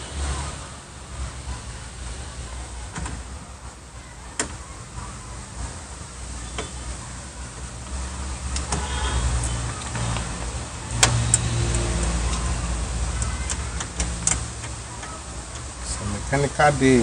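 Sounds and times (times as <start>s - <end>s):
car door parts clicking: 2.9s - 3.4s, 4.3s - 4.8s.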